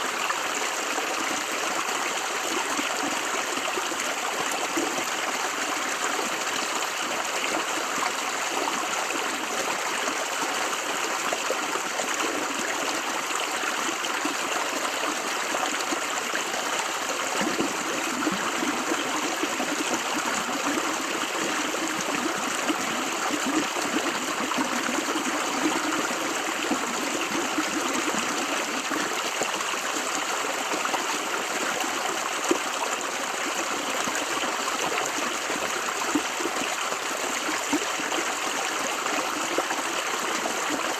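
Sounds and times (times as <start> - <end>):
deep water gurgle: 15.2 - 30.2.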